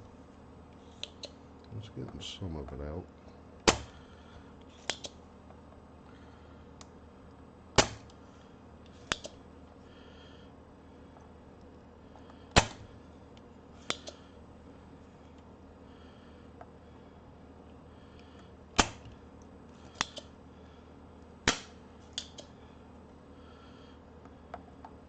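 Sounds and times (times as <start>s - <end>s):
desoldering pump snapping: 3.6s - 4.0s.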